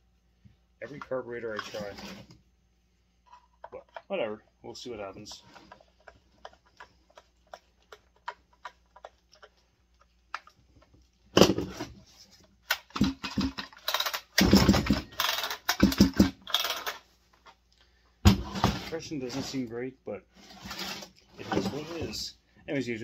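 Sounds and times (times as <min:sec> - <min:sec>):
chainsaw starter cord pulls: 0:12.8 - 0:17.0.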